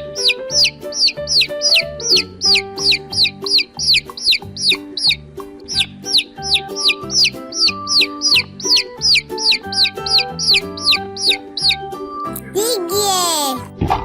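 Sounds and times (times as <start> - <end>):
baby chick peeping: 0.0 - 13.7.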